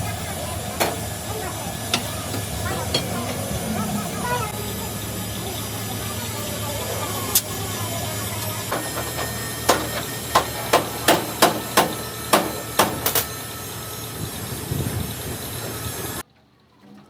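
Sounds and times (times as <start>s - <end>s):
steady low hum: 0.0s - 16.2s
hammer striking steel: 0.8s - 1.2s, 1.8s - 4.6s, 8.7s - 13.4s.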